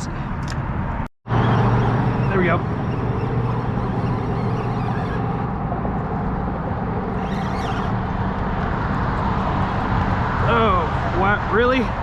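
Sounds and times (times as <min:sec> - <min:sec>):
road traffic hum: 0:00.0 - 0:12.0
high whine: 0:01.3 - 0:06.1.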